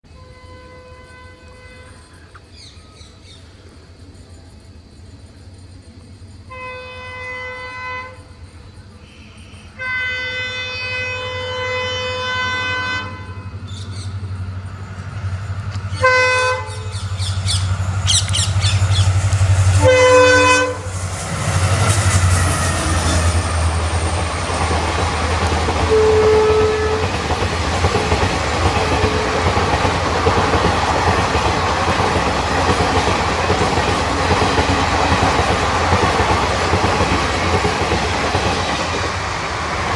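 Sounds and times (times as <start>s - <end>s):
train horn blasts: 0.1s - 2.3s, 6.5s - 8.4s, 9.1s - 14.1s, 15.7s - 27.4s, 28.1s - 29.8s
train wheels rumbling on rails: 1.0s - 39.9s.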